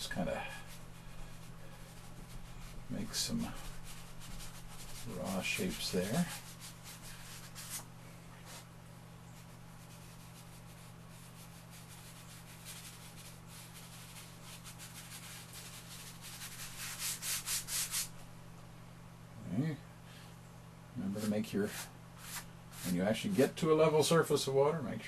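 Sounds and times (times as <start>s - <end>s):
chalk rubbing on board: 0.0s - 7.8s, 8.4s - 8.7s, 9.4s - 18.1s, 21.2s - 23.6s.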